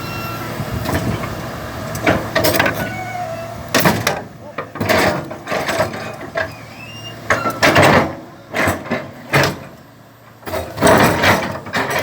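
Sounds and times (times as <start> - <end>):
short metal squeal: 0.0 - 0.6, 2.6 - 3.7, 6.4 - 7.9
excavator metal grinding and creaking: 0.0 - 12.0.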